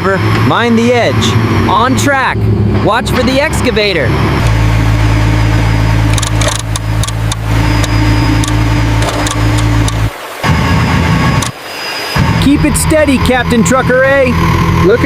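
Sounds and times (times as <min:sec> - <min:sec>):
truck engine humming: 0:00.0 - 0:15.0
sharp clicks and knocks: 0:06.1 - 0:10.0.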